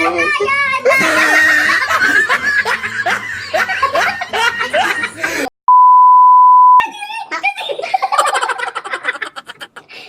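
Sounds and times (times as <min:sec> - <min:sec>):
women laughing: 0:00.9 - 0:05.5, 0:07.8 - 0:09.9
electronic beep: 0:05.7 - 0:06.8.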